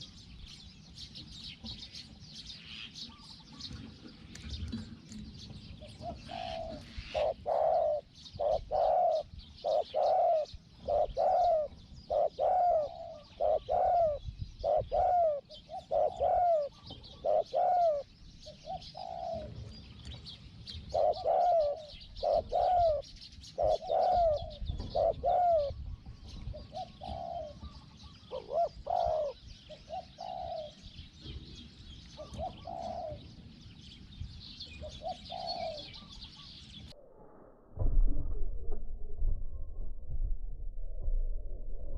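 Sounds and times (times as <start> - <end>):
small birds chirping: 0.0 - 37.0
dove cooing: 2.6 - 19.9, 20.6 - 33.5, 34.7 - 36.9.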